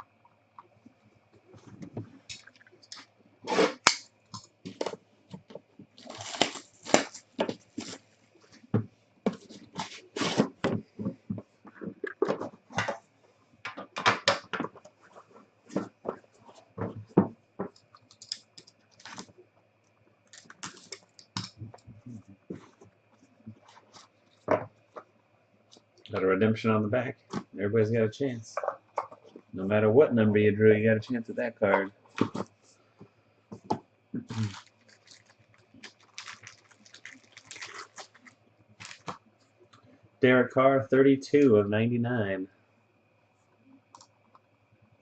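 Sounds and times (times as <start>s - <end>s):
faint electrical hum: 0.0s - 45.0s
packaging crinkling and tearing: 6.0s - 8.0s, 18.0s - 19.3s, 20.3s - 21.6s, 34.3s - 39.2s.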